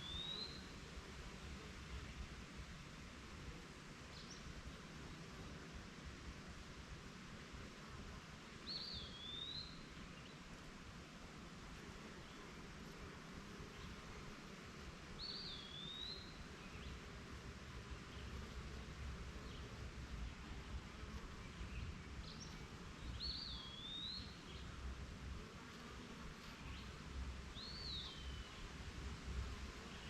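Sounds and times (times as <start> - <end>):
honeybees humming: 25.5 - 28.8.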